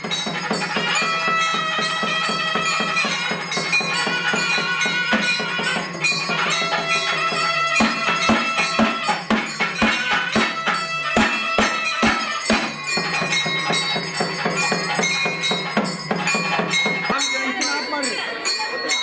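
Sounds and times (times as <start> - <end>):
thavil drum strokes: 0.0 - 18.2
nadaswaram melody: 0.0 - 19.0.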